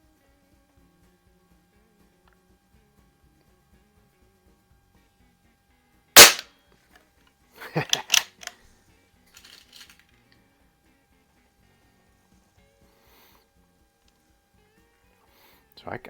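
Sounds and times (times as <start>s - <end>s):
air rifle shot: 6.2s - 6.4s
clicks and clacks: 7.9s - 8.5s.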